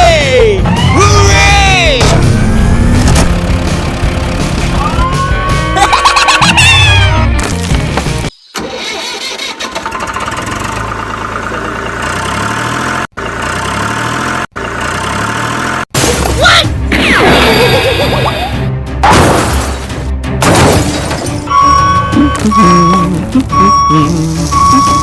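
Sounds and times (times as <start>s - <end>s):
vehicle engine starting and running: 2.0s - 6.7s, 7.4s - 16.2s, 21.3s - 25.0s
light music: 20.2s - 25.0s.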